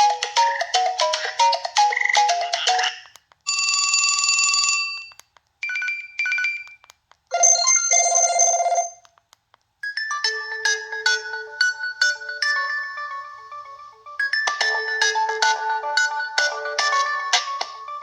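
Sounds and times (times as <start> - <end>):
electronic phone ring: 0.0 - 9.0
phone ringtone melody: 0.0 - 9.0, 9.8 - 18.0.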